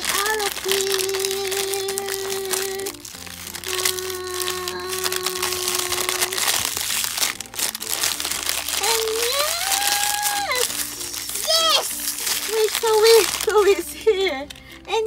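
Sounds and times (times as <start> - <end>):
plastic packaging crinkling: 0.0 - 15.0.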